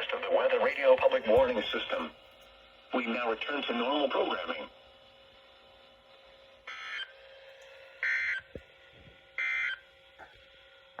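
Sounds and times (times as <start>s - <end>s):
screechy digital data bursts: 8.0s - 8.5s.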